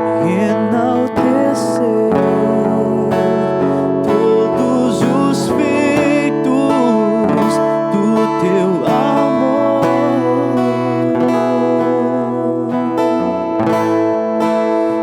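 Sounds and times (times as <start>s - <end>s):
strummed acoustic guitar: 0.0s - 15.0s
gliding melody line: 4.0s - 15.0s.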